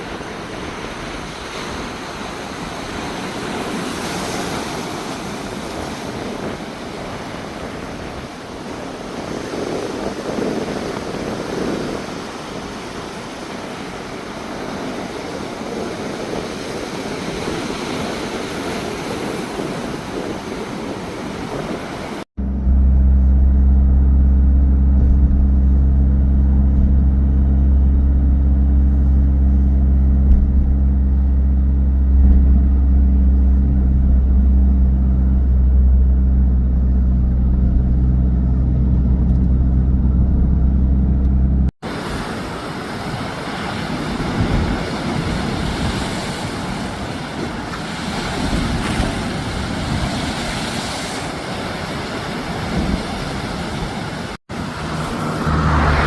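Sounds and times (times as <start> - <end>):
wind: 0.0 - 56.0
engine idling drone: 22.4 - 41.7, 54.5 - 56.0
surf: 41.8 - 56.0.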